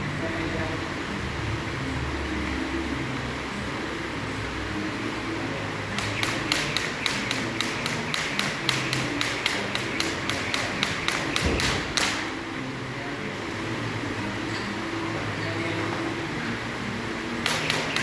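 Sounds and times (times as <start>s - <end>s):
jump rope striking floor: 6.0s - 12.2s.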